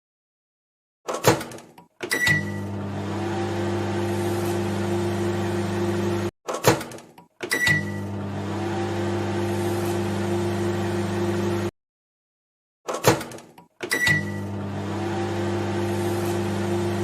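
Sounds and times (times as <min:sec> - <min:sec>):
microwave oven humming: 0:02.2 - 0:06.3, 0:07.6 - 0:11.7, 0:13.9 - 0:17.0.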